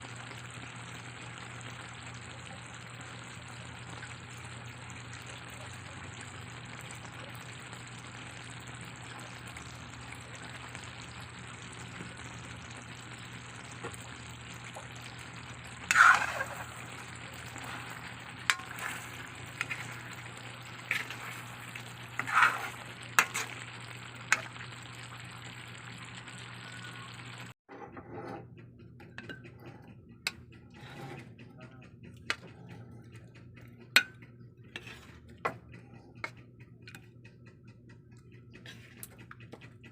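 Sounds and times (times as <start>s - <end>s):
chicken sizzling in a frying pan: 0.0s - 27.6s.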